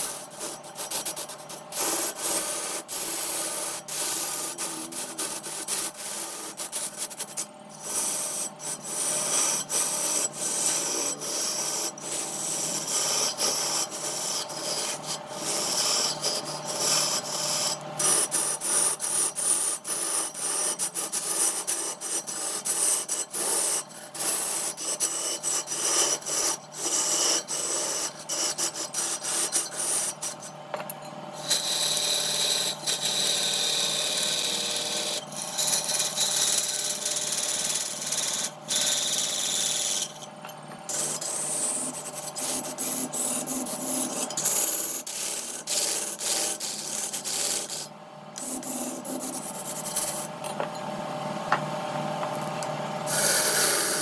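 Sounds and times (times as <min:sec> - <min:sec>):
lathe tool rasping wood: 0:07.8 - 0:30.5, 0:31.4 - 0:40.3, 0:40.9 - 0:50.7, 0:53.0 - 0:54.0
steady hum: 0:39.6 - 0:54.0.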